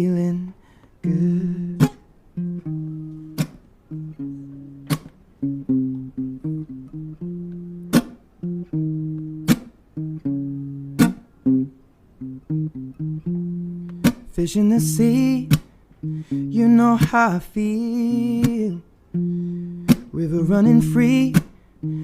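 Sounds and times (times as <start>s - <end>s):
person singing: 0.0s - 2.0s, 14.1s - 22.0s
acoustic guitar riff: 1.0s - 22.0s.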